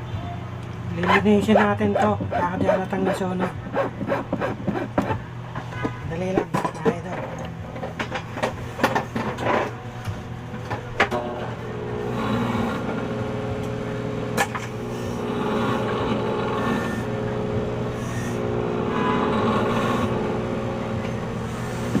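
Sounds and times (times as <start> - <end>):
small motor whirring: 14.8 - 20.6, 21.4 - 22.0.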